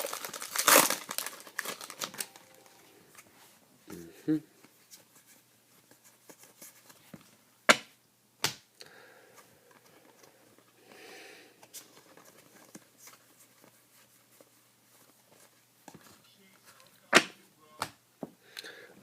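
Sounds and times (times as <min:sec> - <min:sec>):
cards and wrapper rustling: 0:00.0 - 0:03.3.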